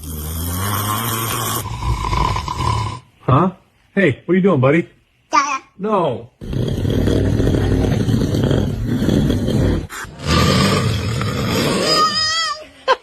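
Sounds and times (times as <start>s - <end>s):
baby snoring: 0.0s - 3.1s, 6.4s - 12.2s.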